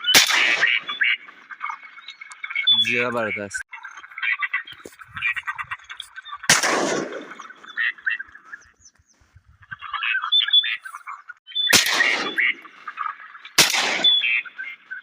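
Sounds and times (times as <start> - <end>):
shotgun shots: 0.0 - 1.1, 6.5 - 7.6, 11.7 - 12.7, 13.6 - 14.4
ducks quacking: 0.0 - 8.8, 9.6 - 15.0.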